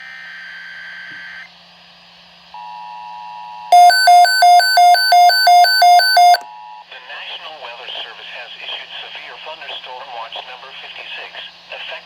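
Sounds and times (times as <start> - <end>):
harsh two-pitch beeping: 3.7 - 6.4.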